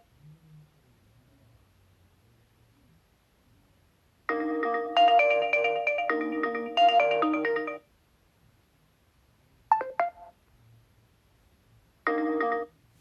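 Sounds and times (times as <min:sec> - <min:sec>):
ringtone melody: 0:04.3 - 0:07.8, 0:09.7 - 0:10.3, 0:12.1 - 0:12.7.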